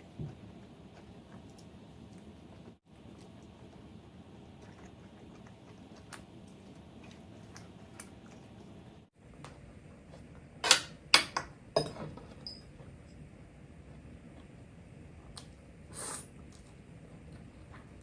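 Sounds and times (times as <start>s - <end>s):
tableware clicking and knocking: 10.6s - 12.8s.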